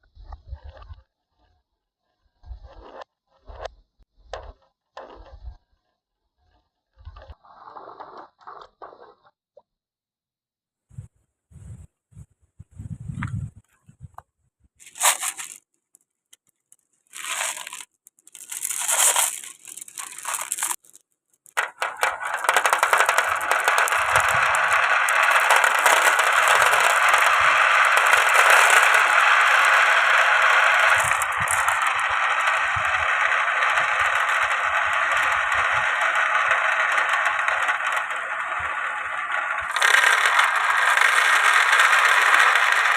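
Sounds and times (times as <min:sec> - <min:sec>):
marbles rattling down wooden run: 0:14.8 - 0:42.9.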